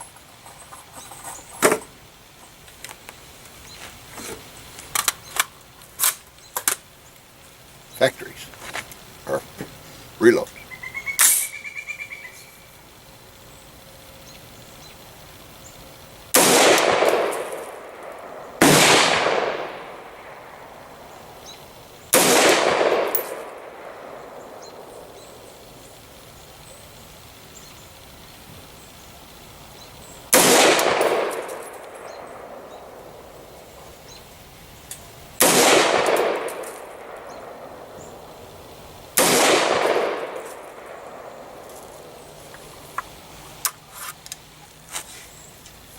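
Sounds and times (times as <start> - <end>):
gunshots with echo: 16.4 - 20.9, 22.1 - 25.2, 30.3 - 33.4, 35.4 - 38.4, 39.2 - 41.7.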